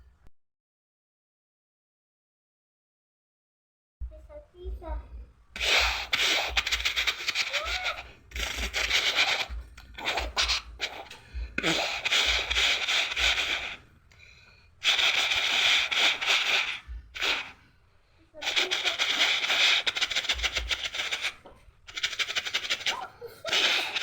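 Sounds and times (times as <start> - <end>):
breathy mouth hissing: 5.6 - 24.0.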